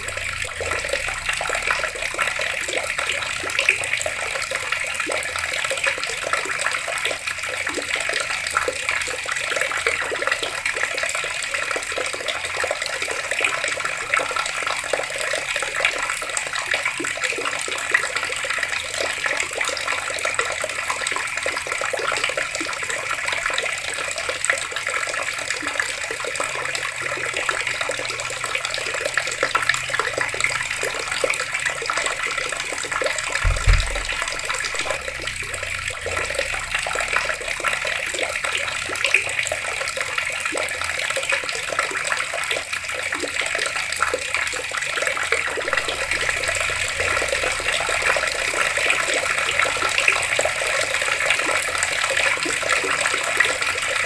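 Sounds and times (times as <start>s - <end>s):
water taps running: 0.0s - 54.0s
low thud: 33.4s - 36.5s.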